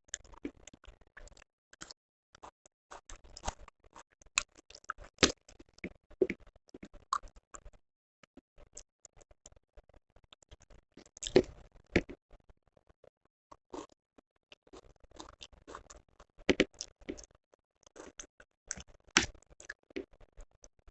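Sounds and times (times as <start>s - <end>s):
person chewing: 0.2s - 7.3s, 11.0s - 12.2s, 13.7s - 13.9s, 14.6s - 20.2s.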